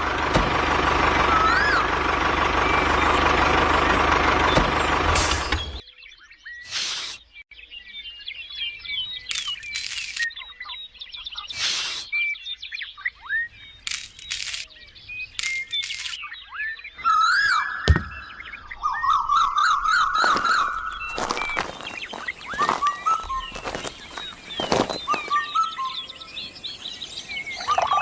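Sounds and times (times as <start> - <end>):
small birds chirping: 4.4 - 28.0
short bursts of noise: 11.5 - 12.1, 13.8 - 14.6
chicken calling: 19.1 - 26.6.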